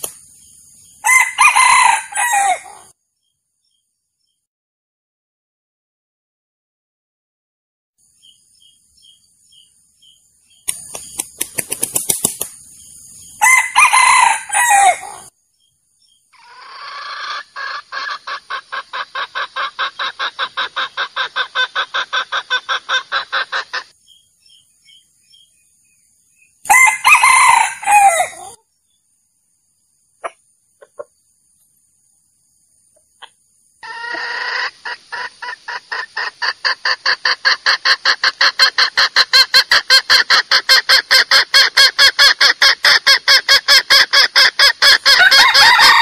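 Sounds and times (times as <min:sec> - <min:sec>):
rooster crowing: 0:01.0 - 0:02.9, 0:13.4 - 0:15.3, 0:26.7 - 0:28.6, 0:45.0 - 0:46.0
rapid clucks: 0:10.6 - 0:12.7, 0:17.3 - 0:24.0, 0:30.2 - 0:31.2, 0:34.1 - 0:45.5
wing flapping: 0:10.7 - 0:12.6.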